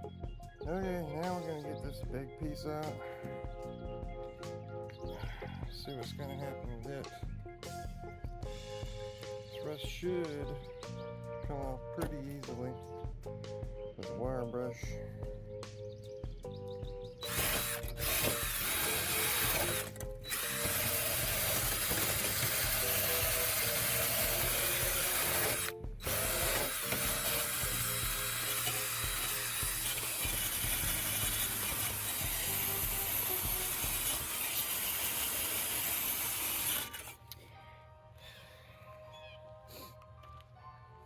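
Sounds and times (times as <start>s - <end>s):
background music: 0.0s - 41.0s
wire brush scrubbing metal: 17.2s - 37.2s.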